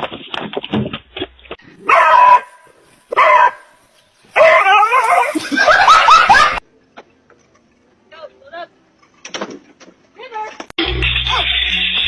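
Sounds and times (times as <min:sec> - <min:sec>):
dog barking: 0:01.8 - 0:03.8, 0:04.4 - 0:06.6.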